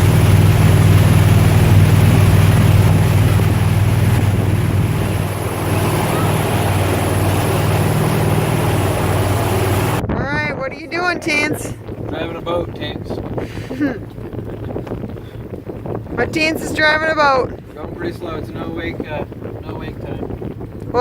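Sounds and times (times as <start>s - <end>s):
engine and road noise inside van: 0.0s - 10.0s.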